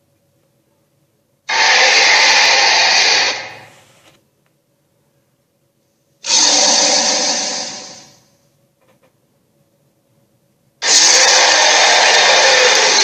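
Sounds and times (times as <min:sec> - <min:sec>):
rushing hissing noise: 0:01.5 - 0:04.1, 0:06.2 - 0:08.2, 0:10.8 - 0:13.0.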